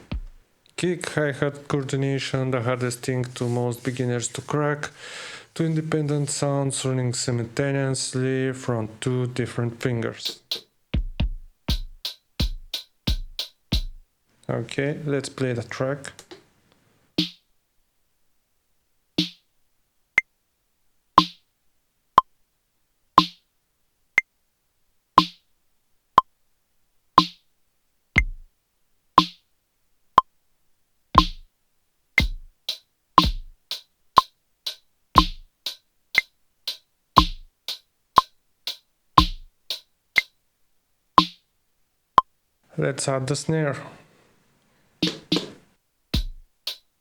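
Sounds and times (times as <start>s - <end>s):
drum machine beat: 0.0s - 0.4s, 10.2s - 14.1s, 17.2s - 17.4s, 19.2s - 19.4s, 21.2s - 21.4s, 23.2s - 23.4s, 27.2s - 27.4s, 28.2s - 28.5s, 29.2s - 29.4s, 31.2s - 31.5s, 32.2s - 40.4s, 41.2s - 41.4s, 45.0s - 45.6s, 46.2s - 46.9s
kick drum hits: 0.0s - 0.4s, 11.0s - 14.0s, 28.2s - 28.5s, 31.2s - 31.5s, 32.2s - 32.5s, 33.2s - 33.6s, 35.2s - 35.5s, 37.2s - 37.5s, 39.2s - 39.5s, 46.2s - 46.5s.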